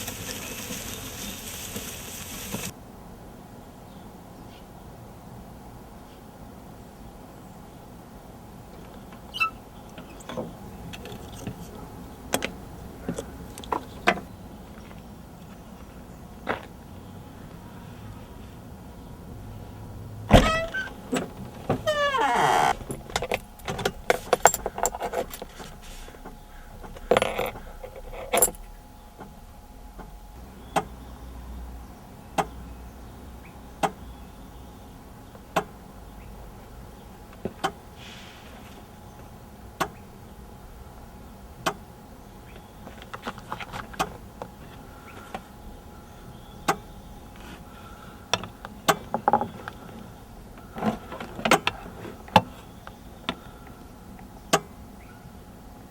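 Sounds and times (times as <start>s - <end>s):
brief squeak: 9.3s - 9.6s
keys jangling: 22.8s - 25.5s, 27.2s - 28.7s.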